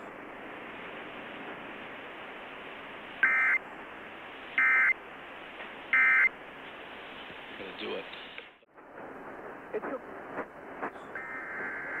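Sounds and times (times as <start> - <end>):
radio static: 11.2 - 12.0.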